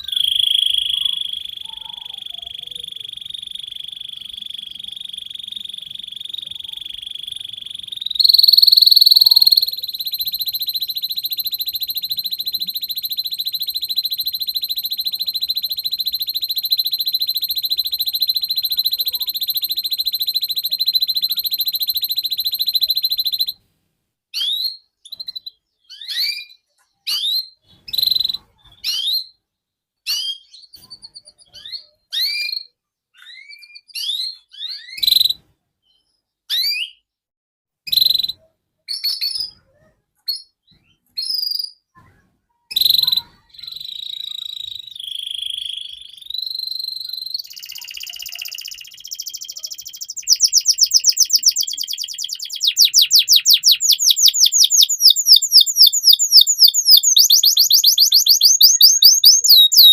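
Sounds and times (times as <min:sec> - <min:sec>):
canary chirping and singing: 0:00.0 - 0:23.6, 0:42.7 - 0:59.9.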